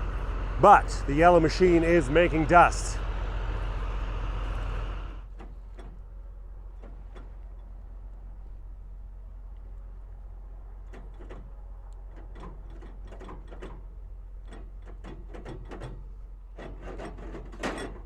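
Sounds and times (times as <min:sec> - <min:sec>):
combine harvester droning: 0:00.0 - 0:18.0
mechanical clicking and rattling: 0:09.6 - 0:18.0.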